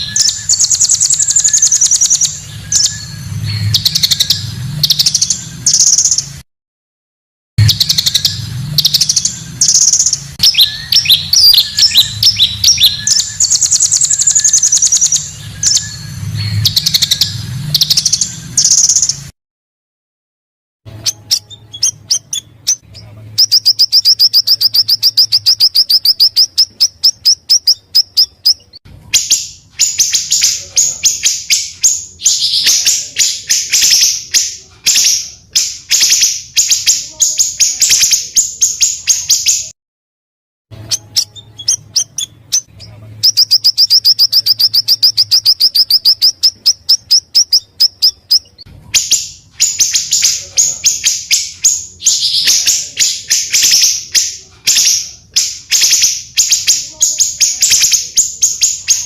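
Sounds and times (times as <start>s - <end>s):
fast high bird trill: 0.0s - 6.4s, 7.6s - 19.3s
harsh rasping bird song: 0.0s - 6.4s, 7.6s - 19.3s, 20.9s - 39.8s, 40.7s - 59.0s.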